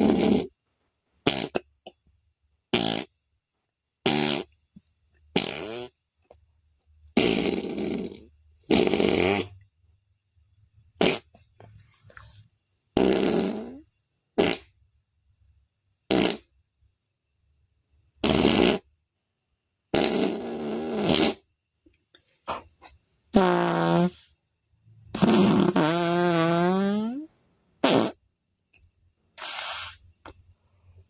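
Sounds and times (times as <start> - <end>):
people imitating fart sounds: 0.0 - 0.5, 1.2 - 1.6, 2.7 - 3.1, 4.0 - 4.5, 5.3 - 6.0, 7.2 - 9.6, 11.0 - 11.4, 13.0 - 13.8, 14.4 - 14.7, 16.1 - 16.5, 18.2 - 18.8, 19.9 - 21.4, 23.4 - 24.2, 25.1 - 28.2, 29.4 - 30.0.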